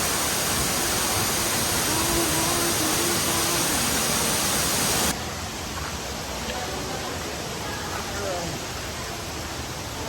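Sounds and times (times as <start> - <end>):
waterfall rushing: 0.0 - 5.6.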